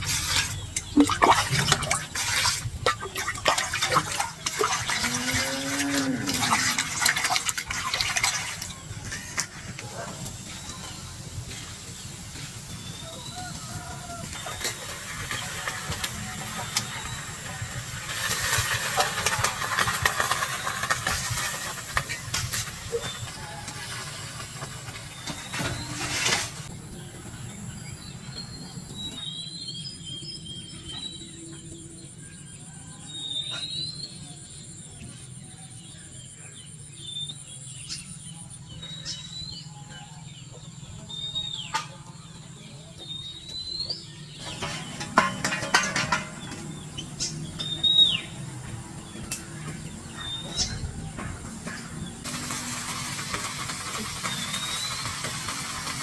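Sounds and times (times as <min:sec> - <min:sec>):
loud rough hissing: 0:51.4 - 0:56.0.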